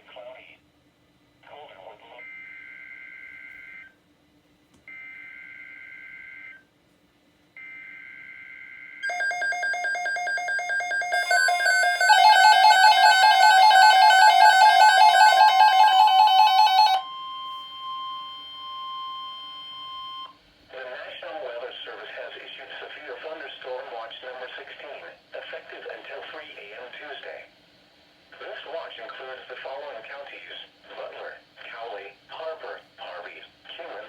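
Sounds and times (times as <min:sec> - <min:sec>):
harsh multi-tone attention signal: 0:09.0 - 0:20.3
warbling data tones: 0:11.2 - 0:17.0.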